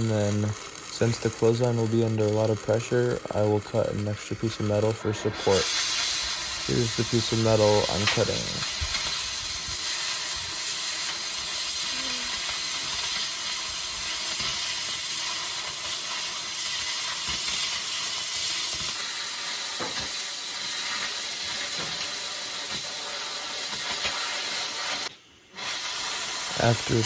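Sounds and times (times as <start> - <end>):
steady hissing of steel cutting: 0.0 - 27.0.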